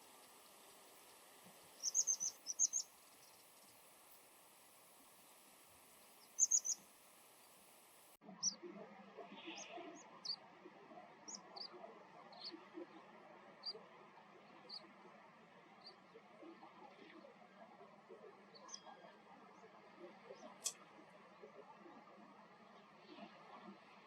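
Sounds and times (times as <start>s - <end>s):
low background noise: 0.0s - 24.0s
sharp high bird calls: 1.8s - 2.9s, 6.2s - 6.8s.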